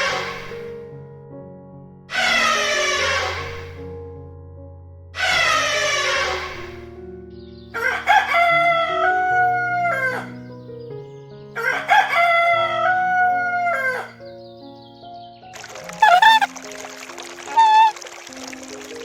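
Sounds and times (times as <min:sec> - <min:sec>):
background music: 0:00.0 - 0:19.0
rooster crowing: 0:07.8 - 0:10.4, 0:11.6 - 0:14.2, 0:16.0 - 0:16.5, 0:17.5 - 0:17.9.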